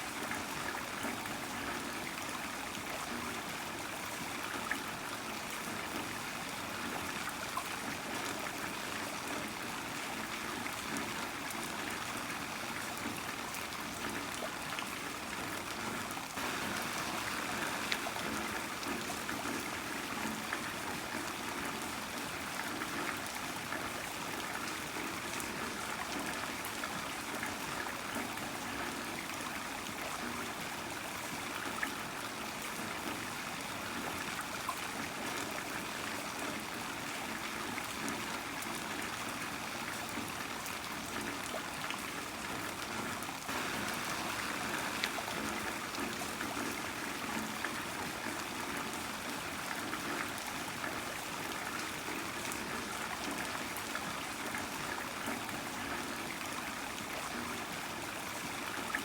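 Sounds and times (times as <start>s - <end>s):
heavy rain falling: 16.4s - 20.0s, 43.5s - 46.9s.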